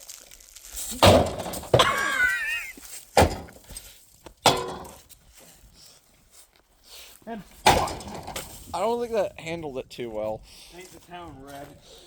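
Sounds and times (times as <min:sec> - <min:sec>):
cracking and breaking: 0:00.0 - 0:03.8
blows smashing a refrigerator: 0:00.9 - 0:02.6, 0:03.2 - 0:03.6, 0:07.6 - 0:08.6.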